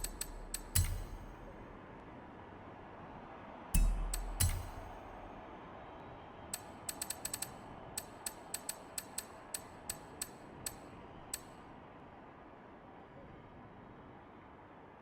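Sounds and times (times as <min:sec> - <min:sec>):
sharp mechanical clicks: 0:00.0 - 0:01.6, 0:03.8 - 0:05.4, 0:06.6 - 0:11.5.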